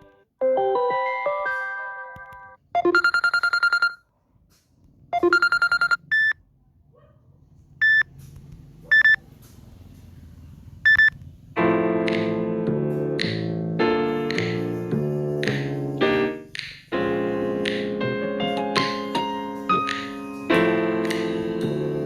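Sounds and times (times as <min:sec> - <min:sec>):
piano-like ringtone: 0:00.0 - 0:04.0, 0:05.2 - 0:06.0
rapid electronic beep trills: 0:05.2 - 0:06.4.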